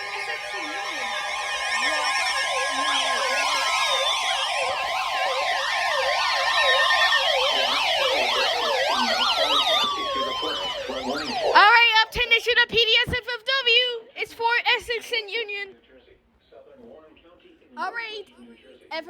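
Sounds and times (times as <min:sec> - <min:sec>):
electronic siren tones sweeping: 0:00.0 - 0:12.3
steady siren tone: 0:00.0 - 0:12.4.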